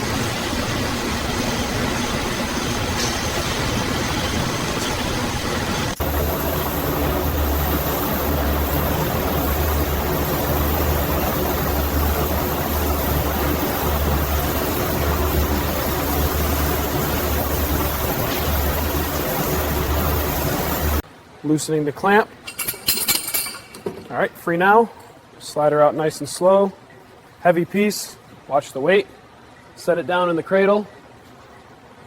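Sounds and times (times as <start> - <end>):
heavy machinery hum: 0.0 - 21.0
machinery hiss: 0.0 - 21.0.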